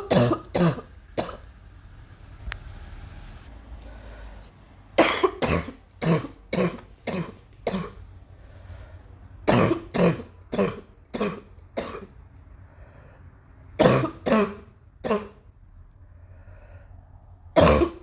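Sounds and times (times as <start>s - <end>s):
person coughing: 0.0s - 1.4s, 5.0s - 8.0s, 9.4s - 12.2s, 13.8s - 15.5s, 17.6s - 18.0s.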